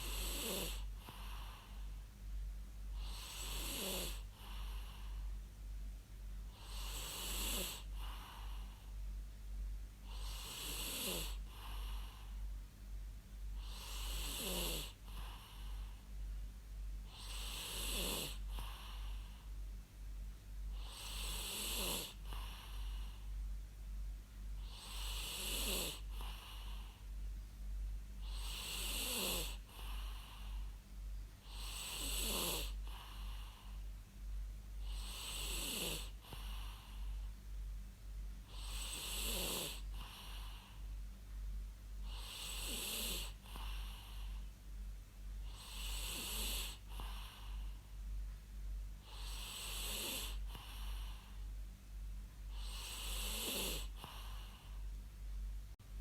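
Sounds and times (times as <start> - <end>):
person snoring: 0.0 - 1.8, 3.0 - 5.1, 6.6 - 8.7, 10.1 - 12.2, 13.6 - 15.8, 17.1 - 19.2, 20.8 - 23.2, 24.6 - 26.9, 28.2 - 30.6, 31.4 - 33.8, 34.8 - 37.1, 38.5 - 40.7, 42.1 - 44.4, 45.5 - 47.7, 49.1 - 51.3, 52.5 - 54.8.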